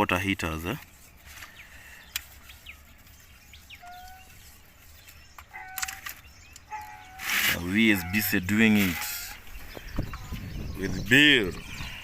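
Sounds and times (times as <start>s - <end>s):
short bird chirps: 1.3s - 10.9s.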